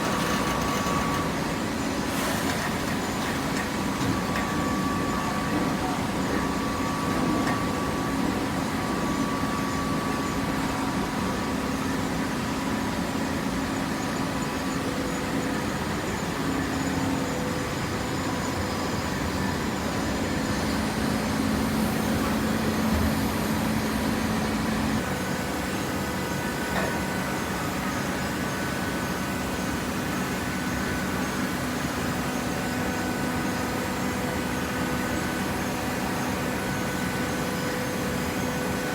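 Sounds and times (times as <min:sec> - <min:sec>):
hydraulic baler motor humming: 0:00.0 - 0:07.3, 0:20.0 - 0:28.2.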